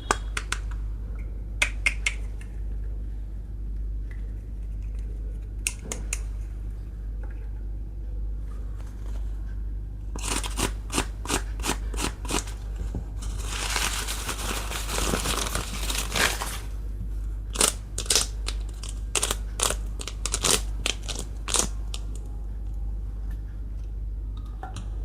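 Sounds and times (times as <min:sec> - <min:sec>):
steady low hum: 0:00.0 - 0:25.0
plastic packaging crinkling: 0:13.2 - 0:16.8, 0:17.5 - 0:22.2.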